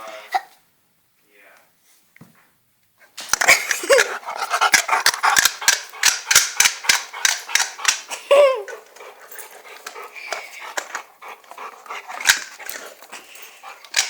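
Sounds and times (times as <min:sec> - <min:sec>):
sharp clicks and taps: 0:03.3 - 0:08.8.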